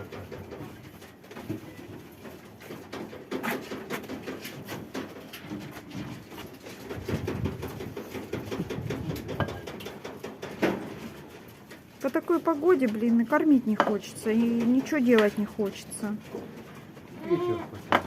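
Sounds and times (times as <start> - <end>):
clicks and knocks of animals moving: 0.0 - 18.0.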